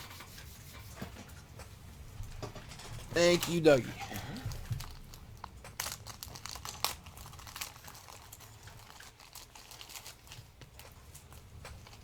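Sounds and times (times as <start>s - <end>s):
plastic wrapping crinkling: 3.3s - 10.9s.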